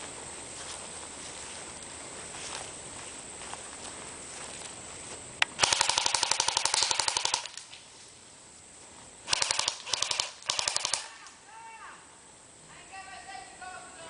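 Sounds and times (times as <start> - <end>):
airsoft guns firing: 5.5 - 7.7, 9.3 - 11.3.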